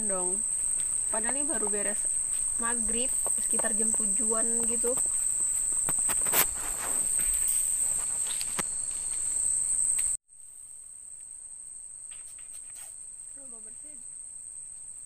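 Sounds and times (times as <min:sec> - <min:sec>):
crickets chirping: 0:00.0 - 0:15.0.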